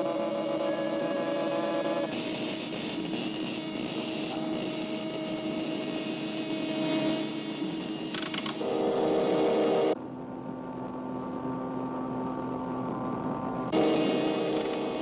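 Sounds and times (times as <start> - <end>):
machine whirring with hiss: 0.0 - 10.0, 13.7 - 15.0.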